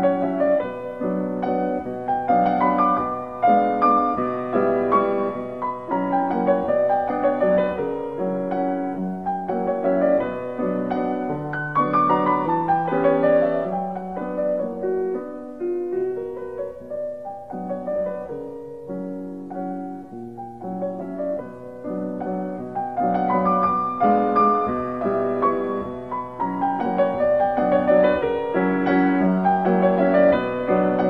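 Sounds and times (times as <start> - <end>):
gentle piano music: 0.0 - 31.0.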